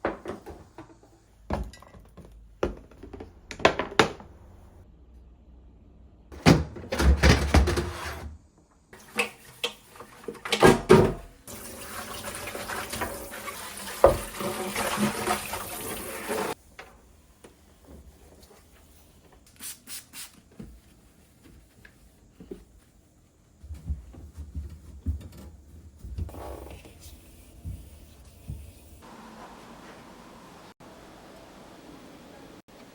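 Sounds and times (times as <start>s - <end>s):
water running from tap: 11.4s - 16.6s.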